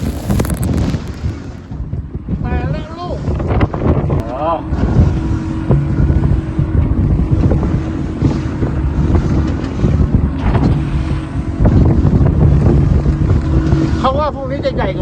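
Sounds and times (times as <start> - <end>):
wind buffeting microphone: 0.0 - 15.0
boat engine humming: 4.6 - 15.0.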